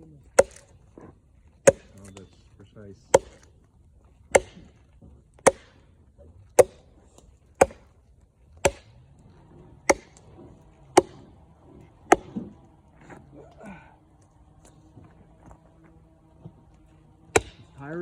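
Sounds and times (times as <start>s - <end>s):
axe chopping wood: 0.2s - 2.2s, 3.1s - 3.6s, 4.2s - 9.0s, 9.8s - 13.2s, 16.4s - 17.8s.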